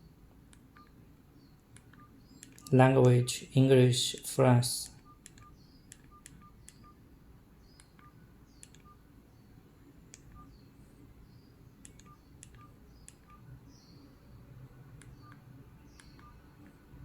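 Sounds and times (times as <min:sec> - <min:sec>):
faint keypad beeps: 0:00.6 - 0:03.5, 0:04.8 - 0:07.0, 0:07.6 - 0:09.1, 0:10.1 - 0:10.7, 0:11.3 - 0:13.5, 0:15.0 - 0:17.0
key clicks: 0:01.8 - 0:03.3, 0:04.8 - 0:06.9.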